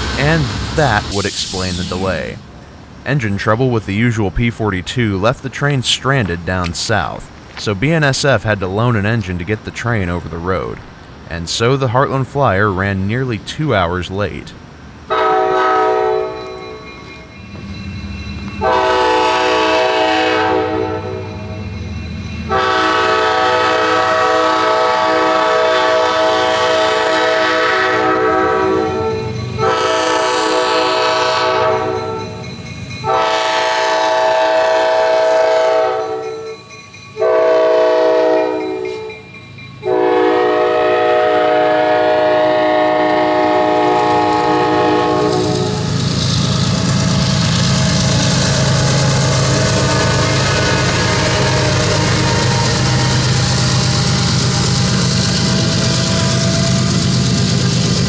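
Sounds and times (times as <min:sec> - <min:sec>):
passing train rumble: 0:00.0 - 0:58.0
train air horn blasts: 0:15.1 - 0:16.7, 0:18.6 - 0:21.3, 0:22.5 - 0:32.4, 0:33.0 - 0:36.5, 0:37.2 - 0:39.1, 0:39.8 - 0:45.9, 0:46.5 - 0:57.0.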